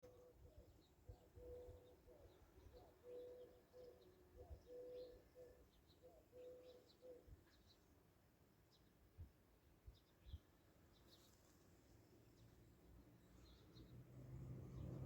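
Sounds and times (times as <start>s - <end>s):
dove cooing: 0.0s - 7.3s
small birds chirping: 0.0s - 8.0s, 9.8s - 15.0s.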